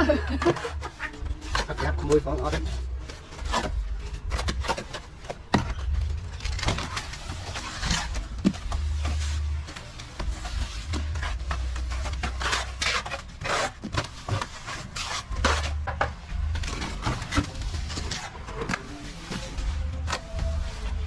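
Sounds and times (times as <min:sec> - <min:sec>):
trowel scraping a wall: 0:00.0 - 0:05.5, 0:06.9 - 0:16.0.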